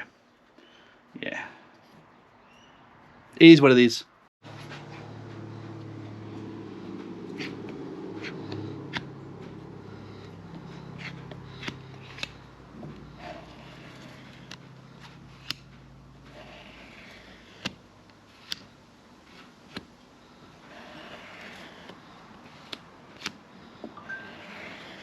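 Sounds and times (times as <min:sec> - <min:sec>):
low steady hum: 0:04.4 - 0:25.0
tools clicking and scraping: 0:07.0 - 0:20.0.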